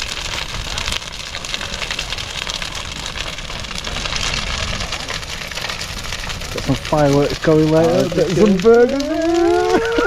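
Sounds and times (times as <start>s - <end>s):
bonfire crackling: 0.0s - 10.0s
low fire rumble: 0.0s - 10.0s.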